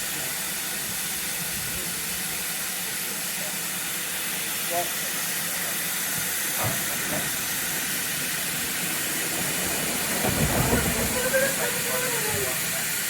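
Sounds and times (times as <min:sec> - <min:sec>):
steam locomotive hissing: 0:00.0 - 0:13.0
low thumps and rumbles: 0:10.1 - 0:11.4.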